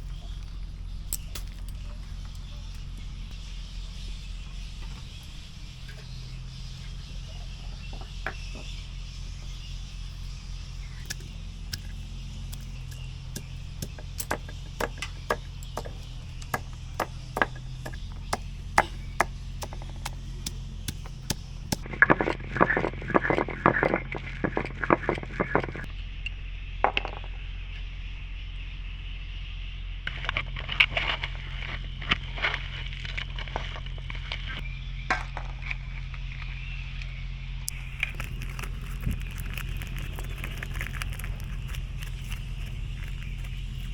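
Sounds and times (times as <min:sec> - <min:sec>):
steady low hum: 0:00.0 - 0:26.8, 0:27.4 - 0:43.9
knife chopping pumpkin on wood: 0:11.0 - 0:23.5.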